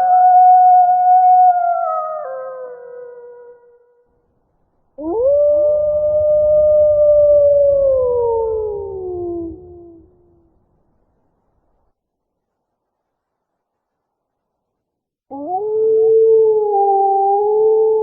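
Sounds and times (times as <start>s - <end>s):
wolf howling: 5.0s - 10.2s, 15.3s - 18.0s
low rumble: 5.0s - 10.8s.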